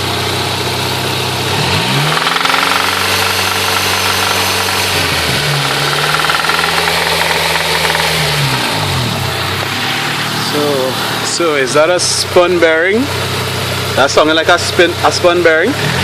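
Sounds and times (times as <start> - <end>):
car engine knocking: 2.0 - 9.0.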